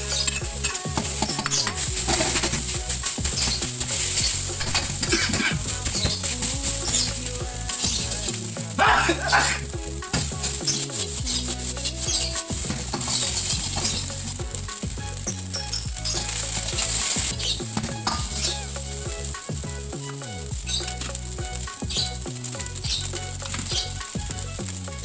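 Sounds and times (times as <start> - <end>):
food sizzling in a pan: 0.0 - 19.4.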